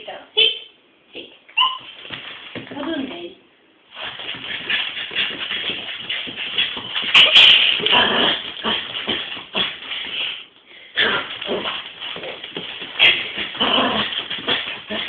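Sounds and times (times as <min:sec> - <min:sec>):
dog whimpering and yipping: 0:01.6 - 0:02.0, 0:07.1 - 0:08.2.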